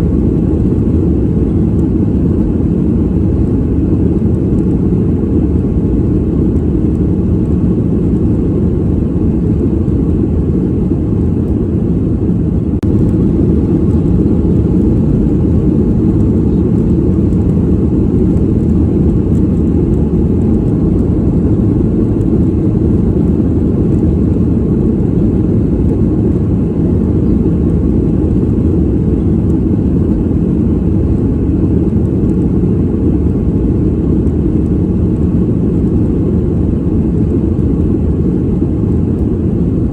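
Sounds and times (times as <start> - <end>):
airplane cabin rumble in flight: 0.0 - 39.9.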